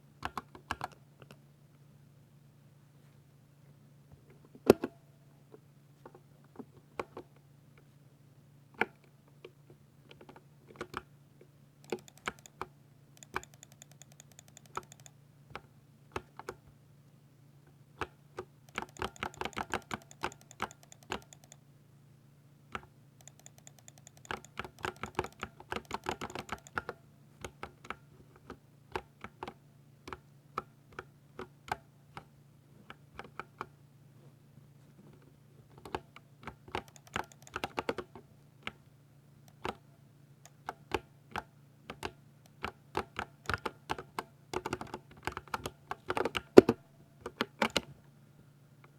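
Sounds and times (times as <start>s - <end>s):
mechanical keyboard typing: 11.8s - 15.2s, 18.7s - 21.6s, 23.2s - 28.0s, 35.8s - 38.1s, 40.4s - 47.9s.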